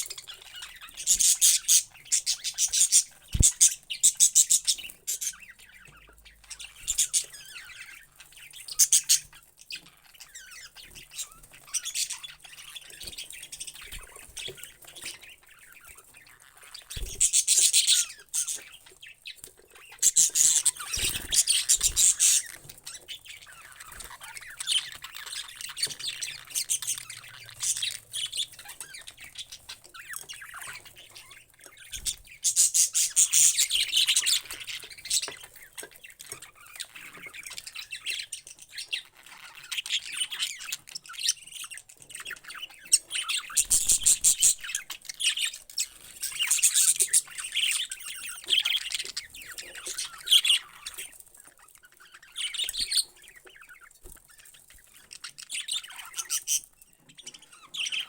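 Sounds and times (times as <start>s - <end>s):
parrots squawking: 0.0s - 12.9s, 19.8s - 31.8s, 42.2s - 51.1s.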